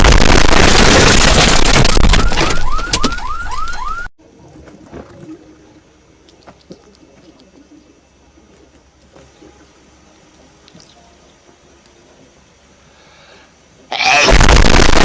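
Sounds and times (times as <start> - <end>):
distorted explosion: 0.0 - 3.1, 14.1 - 15.0.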